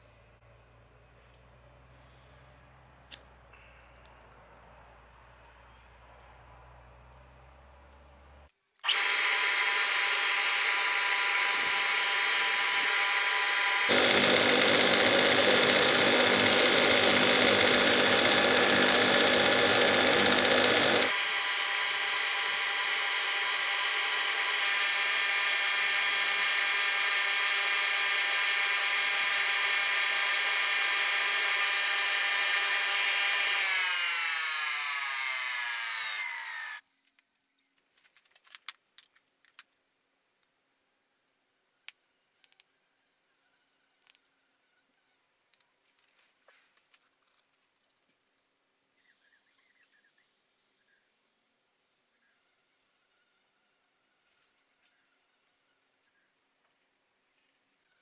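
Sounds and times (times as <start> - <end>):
power tool motor whining: 8.8 - 36.8.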